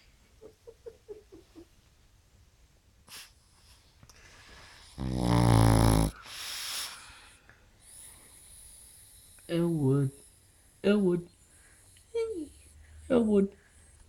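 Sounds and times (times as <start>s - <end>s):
soft breathy breaths: 3.0s - 14.0s
dog snoring: 4.8s - 6.9s.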